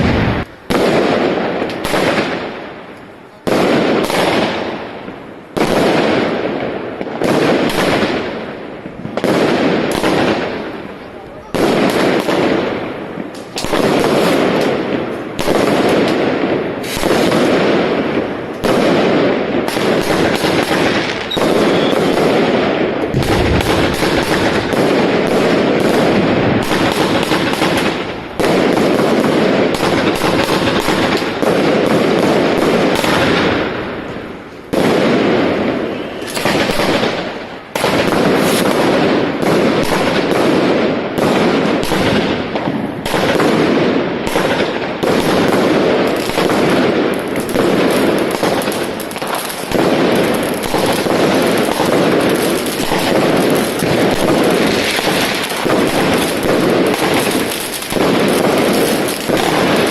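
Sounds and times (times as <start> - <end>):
firework barrage with crackling: 0.0 - 59.9.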